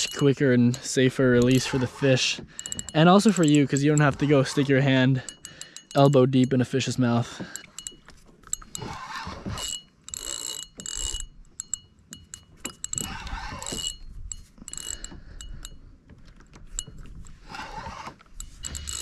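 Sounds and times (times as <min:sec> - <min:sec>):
fishing reel cranking with gear whine: 0:00.0 - 0:06.9, 0:07.6 - 0:15.8, 0:16.8 - 0:19.0
fishing reel clicks: 0:08.6 - 0:11.8, 0:14.7 - 0:15.6, 0:16.8 - 0:19.0.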